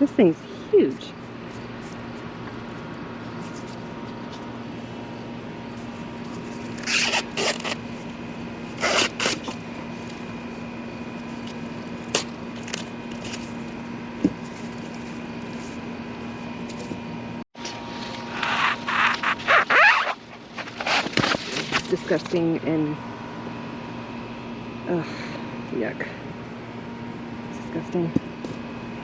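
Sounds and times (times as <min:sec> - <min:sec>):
steady low hum: 0:00.0 - 0:29.0
corn husks rustling and tearing: 0:17.6 - 0:22.4.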